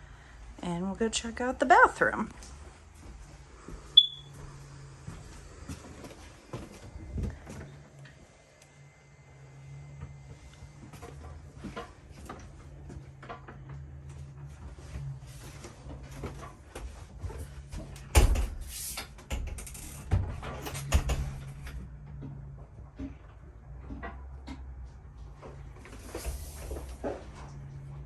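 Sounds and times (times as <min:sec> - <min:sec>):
steady low hum: 0:00.0 - 0:18.5
doors opening and closing: 0:04.0 - 0:24.8.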